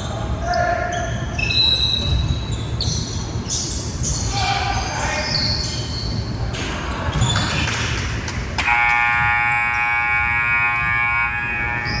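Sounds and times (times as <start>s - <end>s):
basketball court noise: 0.1s - 12.0s
scoreboard buzzer: 8.7s - 12.0s.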